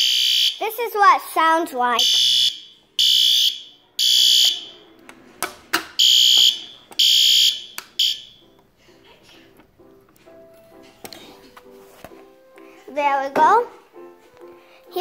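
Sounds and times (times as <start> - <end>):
fire alarm blasts: 0.0 - 0.7, 2.0 - 4.8, 6.0 - 8.4.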